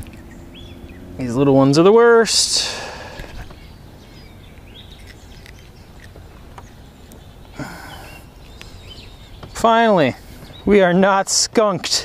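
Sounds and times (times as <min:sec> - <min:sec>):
faint bird chirps: 0:00.0 - 0:01.3, 0:03.2 - 0:10.9
low background rumble: 0:00.0 - 0:11.1.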